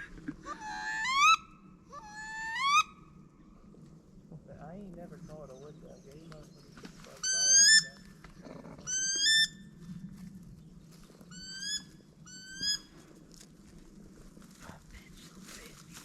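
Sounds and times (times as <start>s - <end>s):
duck call squeals: 0.5s - 2.9s, 7.2s - 8.0s, 8.9s - 9.6s, 11.3s - 12.9s.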